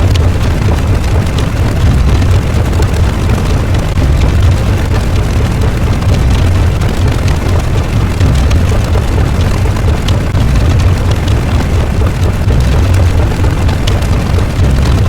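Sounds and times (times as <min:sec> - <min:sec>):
low rumble with rough hiss: 0:00.0 - 0:15.0.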